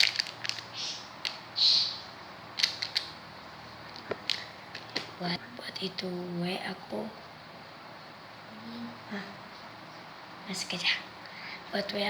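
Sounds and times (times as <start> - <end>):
foam toy squishing: 0.0 - 1.9, 2.6 - 3.2, 3.9 - 5.2
faint clicks: 2.6 - 3.1.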